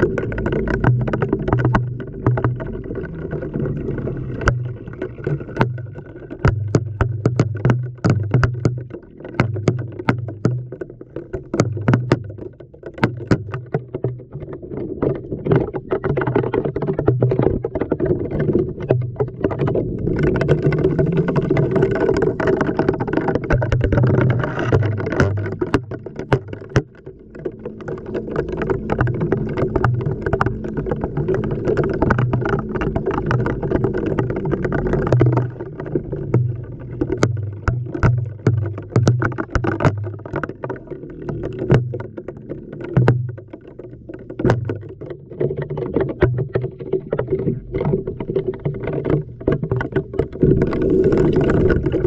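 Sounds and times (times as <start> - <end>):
water sloshing and laundry tumbling: 43.0 - 52.0.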